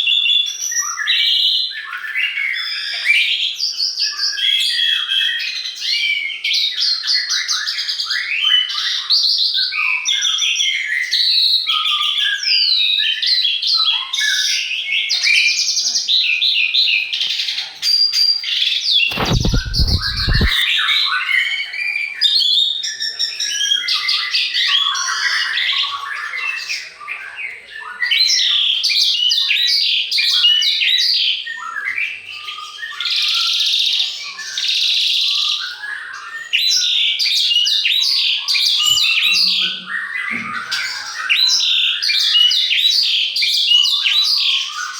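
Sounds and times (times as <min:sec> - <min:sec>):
brief low rumble: 0:19.1 - 0:20.6
chorus of songbirds: 0:19.1 - 0:44.9.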